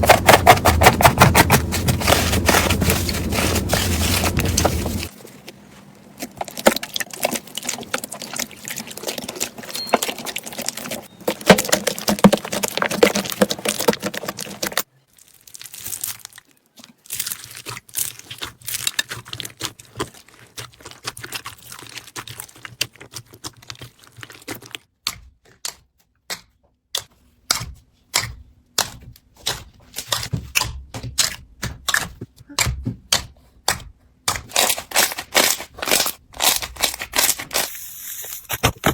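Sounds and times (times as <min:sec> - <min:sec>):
slime crackling and popping: 0:06.2 - 0:24.8.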